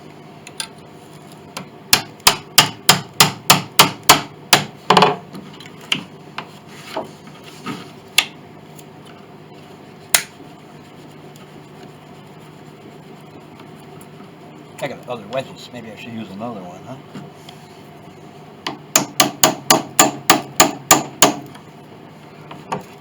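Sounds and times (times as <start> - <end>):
hammer striking a chisel blade: 1.9 - 5.2, 18.7 - 21.5.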